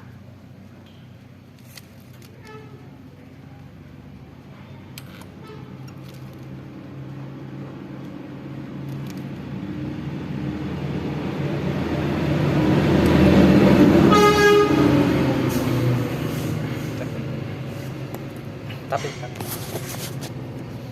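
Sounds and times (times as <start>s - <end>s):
car horn honk: 5.4s - 5.8s, 14.0s - 15.2s
vehicle engine passing: 6.6s - 20.9s.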